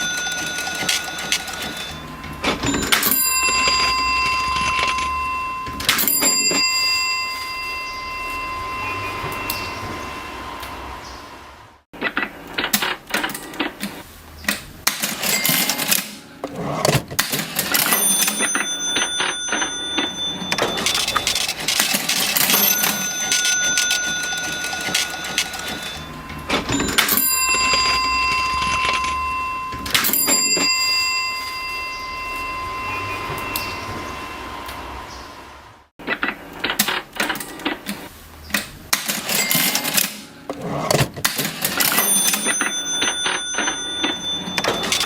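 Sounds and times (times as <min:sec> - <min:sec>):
cash register keys clattering: 0:00.0 - 0:09.7, 0:14.8 - 0:33.8, 0:38.9 - 0:45.0
cash register bell ringing: 0:00.0 - 0:10.9, 0:14.9 - 0:35.3, 0:38.9 - 0:45.0.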